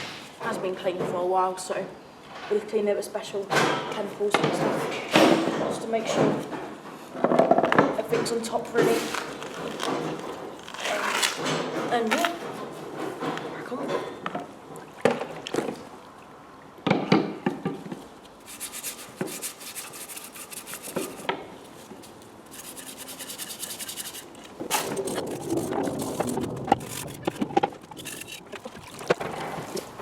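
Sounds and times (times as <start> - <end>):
quick scraping strokes: 18.4 - 28.6.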